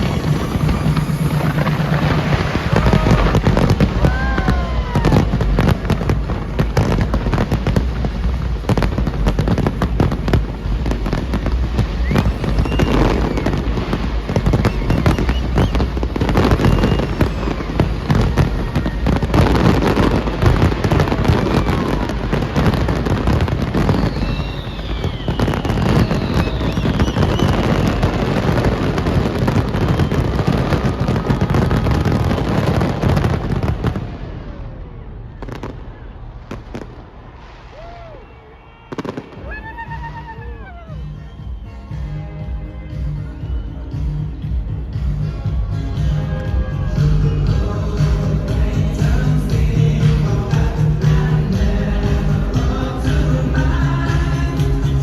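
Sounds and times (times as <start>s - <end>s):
whistling firework shells: 0.0s - 5.4s, 11.8s - 34.0s
fireworks bangs and crackles: 0.0s - 55.0s.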